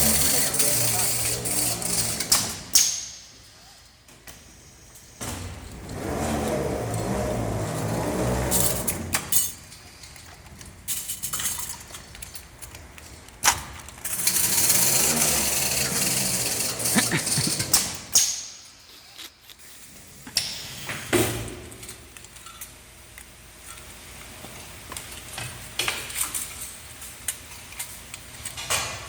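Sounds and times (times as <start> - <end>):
machine motor running: 14.1 - 17.8.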